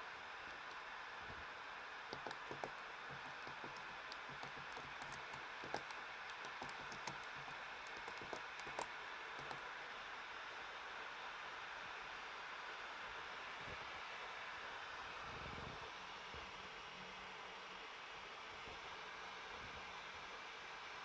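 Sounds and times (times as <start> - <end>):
light laptop clicks: 0.5 - 0.8, 2.1 - 9.6.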